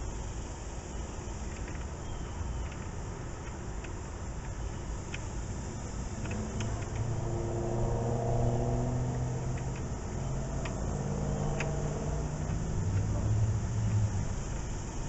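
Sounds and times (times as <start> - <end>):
low engine hum: 0.0 - 15.0
light clicks: 6.0 - 7.2, 9.1 - 14.8.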